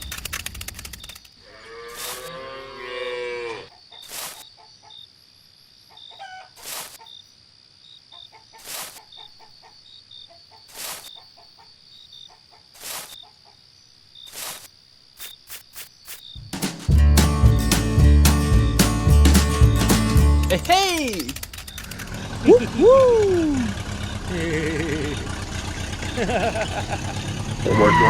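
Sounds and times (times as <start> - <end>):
sharp clicks: 0.0 - 1.4, 20.5 - 22.4
cow mooing: 1.4 - 3.7, 27.6 - 28.0.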